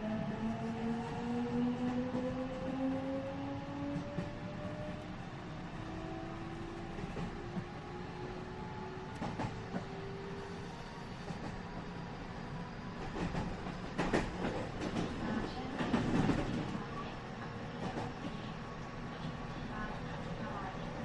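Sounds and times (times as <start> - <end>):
train wheel and motor rumble: 0.0 - 21.0.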